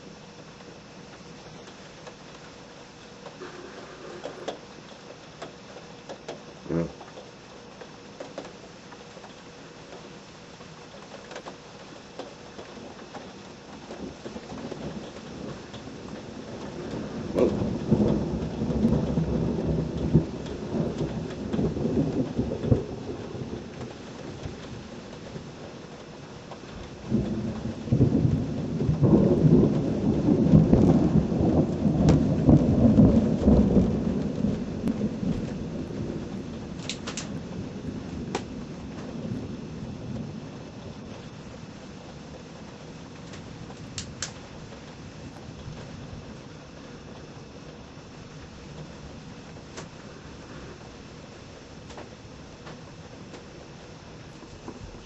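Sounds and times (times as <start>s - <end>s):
steady rain falling: 0.0s - 55.0s
low rumble of thunder: 12.5s - 55.0s.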